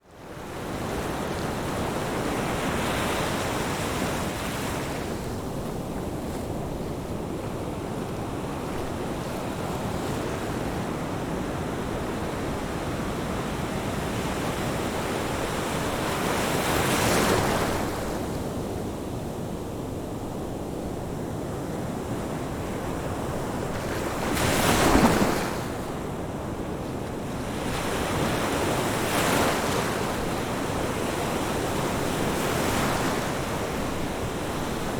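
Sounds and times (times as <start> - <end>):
ocean waves breaking on beach: 21.7 - 34.9.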